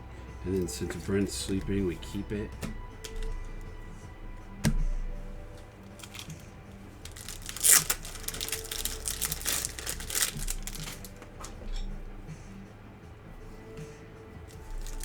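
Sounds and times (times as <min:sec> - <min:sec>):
foil wrapper crinkling and tearing: 0:01.4 - 0:03.6, 0:05.5 - 0:11.8, 0:14.6 - 0:15.0.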